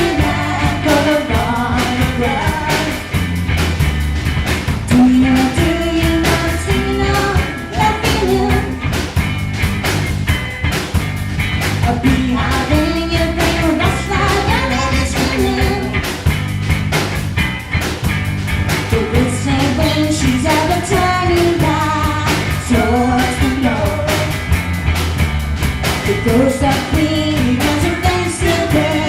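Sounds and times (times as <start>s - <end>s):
person singing: 0.0s - 3.1s, 4.9s - 8.8s, 11.8s - 16.0s, 18.9s - 24.4s, 26.1s - 29.0s
rock band playing live: 0.0s - 29.0s.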